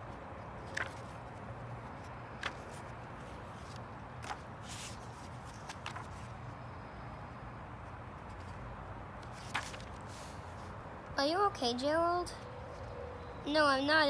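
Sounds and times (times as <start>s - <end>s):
paper rustling: 0.5s - 6.5s, 9.2s - 10.7s.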